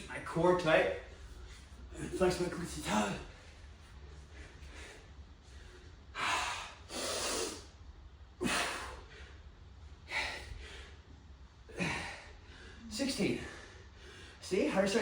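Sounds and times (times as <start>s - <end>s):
man breathing hard: 4.0s - 7.7s, 8.4s - 14.4s.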